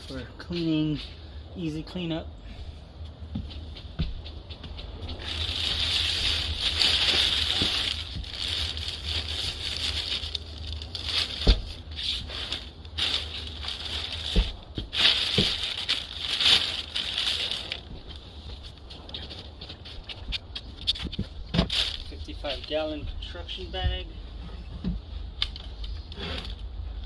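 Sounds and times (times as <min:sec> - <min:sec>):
plastic bag crinkling: 0:05.2 - 0:19.4.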